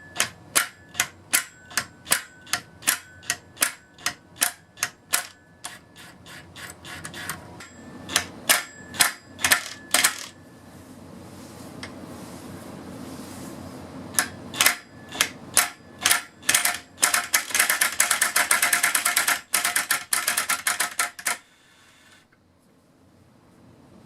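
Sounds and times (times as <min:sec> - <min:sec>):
impact wrench hammering: 0:00.0 - 0:10.4, 0:14.2 - 0:21.4
impact wrench motor spinning: 0:15.6 - 0:21.4.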